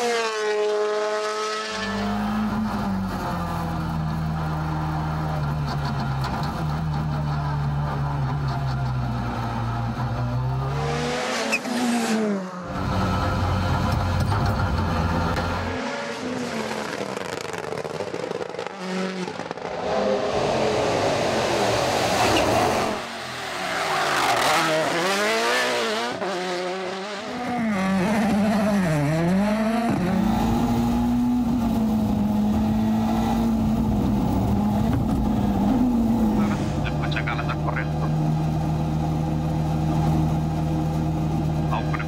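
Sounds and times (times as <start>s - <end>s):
rally car engine revving: 0.0s - 42.0s.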